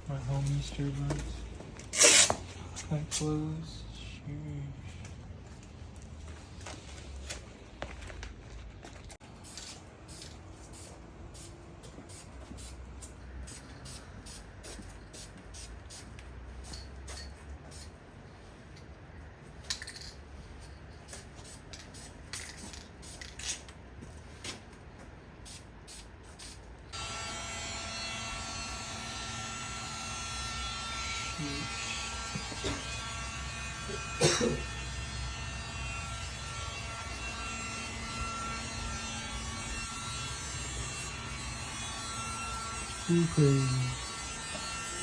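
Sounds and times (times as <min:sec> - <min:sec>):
spray can rattles and clicks: 0:09.4 - 0:11.5, 0:13.5 - 0:17.9, 0:19.7 - 0:20.2, 0:21.1 - 0:23.8, 0:25.4 - 0:26.7
steady electric buzz: 0:26.9 - 0:45.0.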